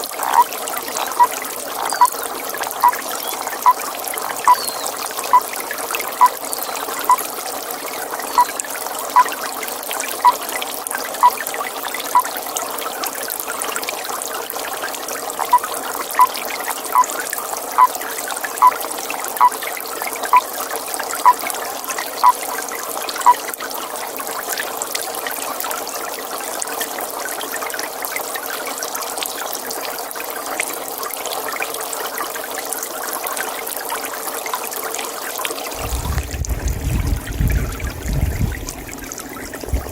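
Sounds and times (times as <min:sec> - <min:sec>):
water trickling: 0:00.0 - 0:39.9
toad calling: 0:00.1 - 0:03.8, 0:04.4 - 0:05.5, 0:06.2 - 0:07.2, 0:08.3 - 0:08.6, 0:15.4 - 0:17.1, 0:18.6 - 0:18.8.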